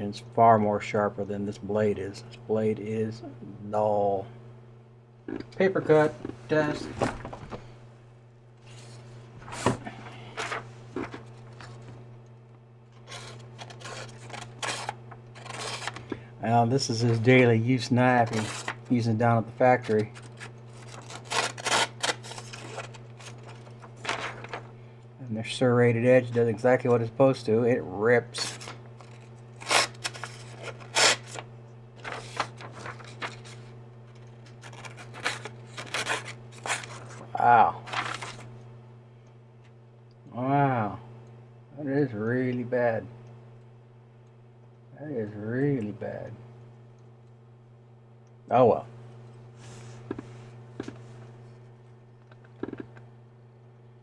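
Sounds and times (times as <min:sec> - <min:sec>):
knife slicing paper: 0:13.1 - 0:16.0, 0:19.9 - 0:23.4, 0:28.4 - 0:31.4.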